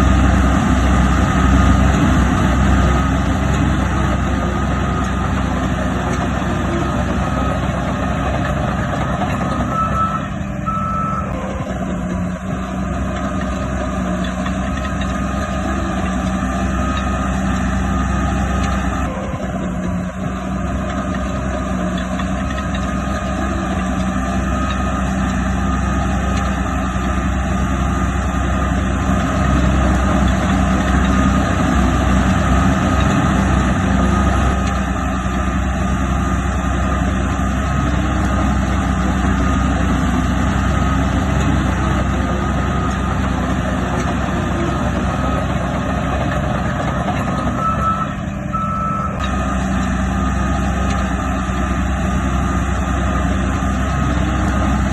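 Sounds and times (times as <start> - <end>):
heavy diesel machinery running: 0.0 - 54.9
reversing alarm beeping: 2.8 - 12.4, 15.6 - 20.1, 31.1 - 34.7, 40.7 - 49.6.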